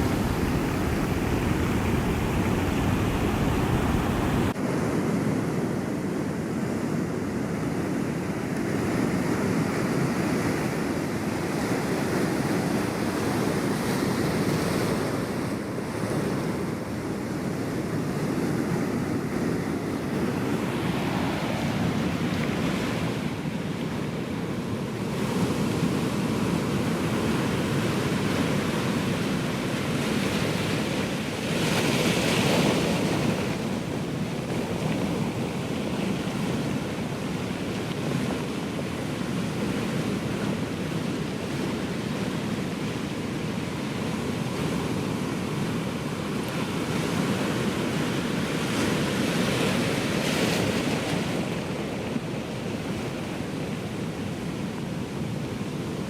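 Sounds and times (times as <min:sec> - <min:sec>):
wave breaking: 0:00.0 - 0:04.6
ocean surf rushing: 0:00.0 - 0:06.0, 0:18.0 - 0:24.3.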